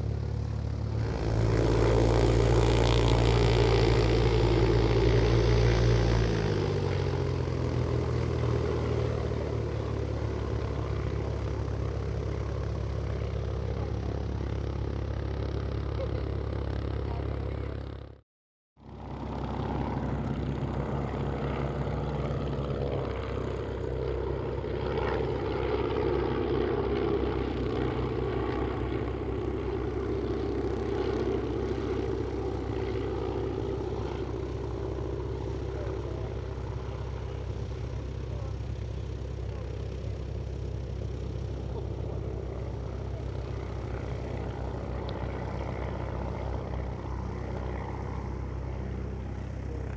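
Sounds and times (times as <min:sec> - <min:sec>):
propeller plane engine droning: 0:00.0 - 0:18.2, 0:18.8 - 0:49.9.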